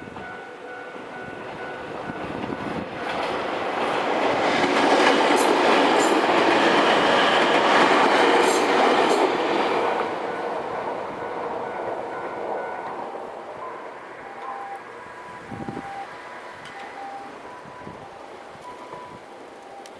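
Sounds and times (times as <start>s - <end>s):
train wheels rumbling on rails: 0.0s - 19.9s
sharp clicks of train wheels: 1.1s - 13.0s.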